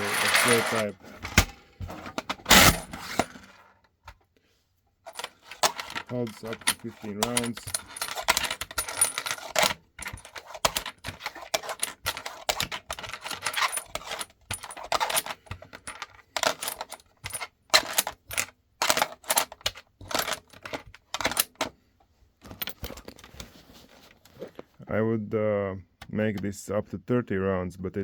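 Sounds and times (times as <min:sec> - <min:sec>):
rifle cartridges clinking: 0:00.0 - 0:01.6, 0:05.1 - 0:21.7.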